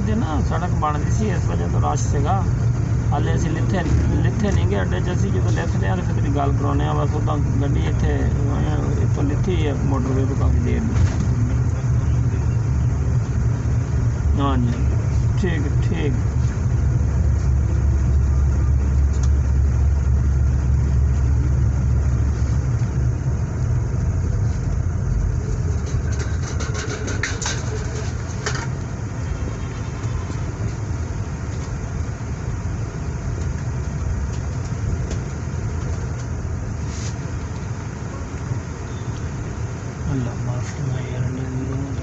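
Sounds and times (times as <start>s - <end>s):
vehicle engine and road rumble: 0.0s - 42.0s.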